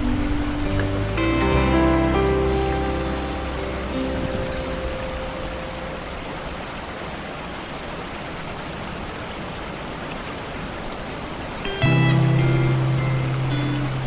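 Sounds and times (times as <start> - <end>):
music: 0.0 - 5.9, 11.7 - 14.0
rain falling on a lake: 0.0 - 14.0.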